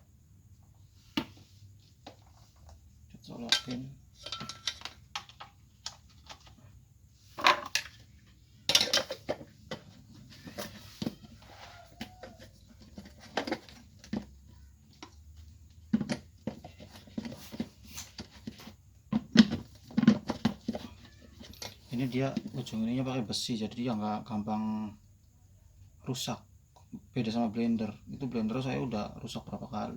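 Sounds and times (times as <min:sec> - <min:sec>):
appliance parts knocking and clattering: 0:03.3 - 0:06.6, 0:07.4 - 0:11.3, 0:12.0 - 0:22.7.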